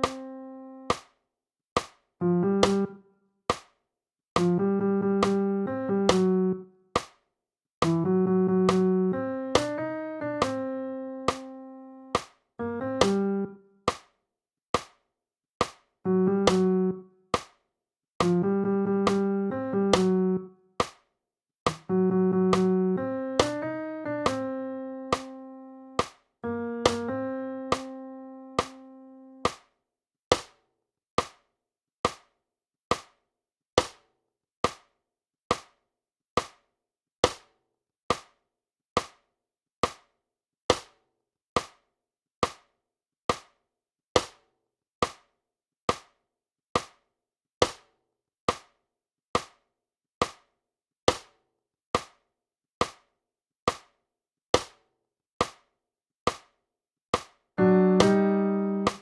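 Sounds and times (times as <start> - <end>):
held piano note: 57.6 - 59.0.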